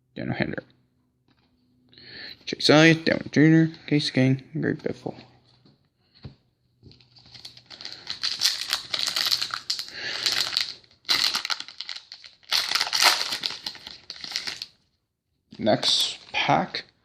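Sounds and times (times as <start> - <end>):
foil wrapper crinkling: 7.0 - 14.8.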